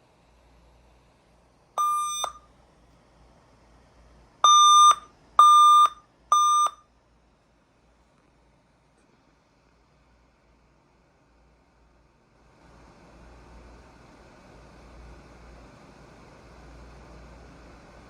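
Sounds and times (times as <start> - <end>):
computer error beeps: 1.8 - 2.4, 4.5 - 6.8.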